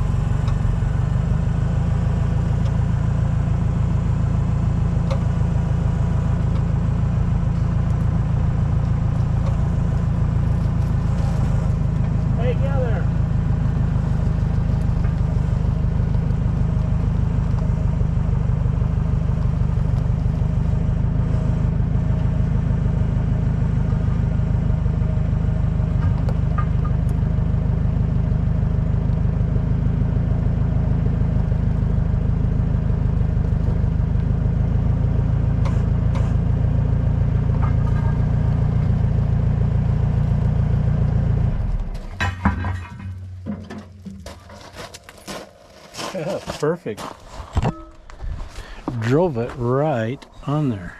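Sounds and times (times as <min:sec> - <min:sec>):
heavy machine engine rumbling: 0:00.0 - 0:50.9
metallic knocks: 0:47.6 - 0:48.1.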